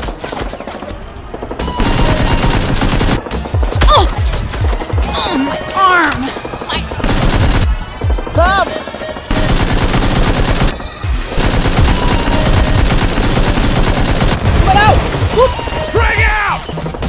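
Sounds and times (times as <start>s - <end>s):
rapid automatic gunfire: 1.6s - 3.5s, 6.4s - 15.4s.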